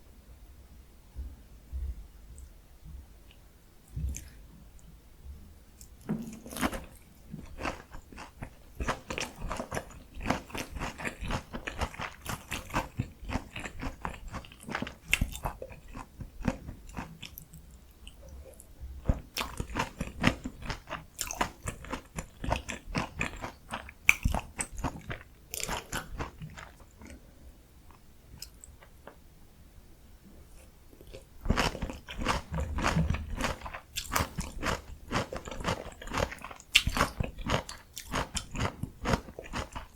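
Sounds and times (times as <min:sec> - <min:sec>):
crunchy fried food chewing: 0:05.8 - 0:27.2, 0:30.6 - 0:39.9.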